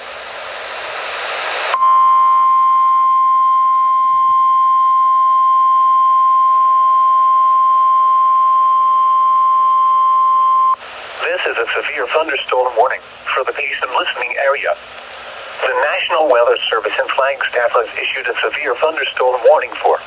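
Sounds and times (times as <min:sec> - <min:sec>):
emergency alert tone: 0:01.8 - 0:10.8.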